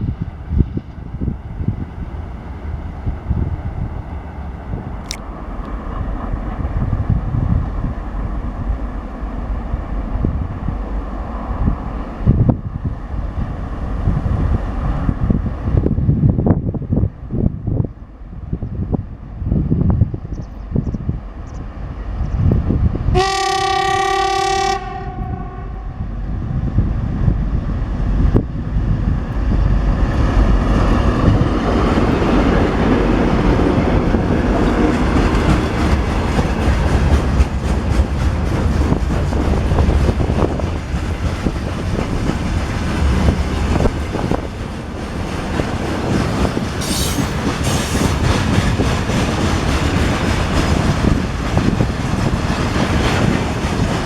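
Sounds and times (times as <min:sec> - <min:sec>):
locomotive horn blast: 0:23.1 - 0:26.0
train wheels clattering: 0:30.1 - 0:54.0.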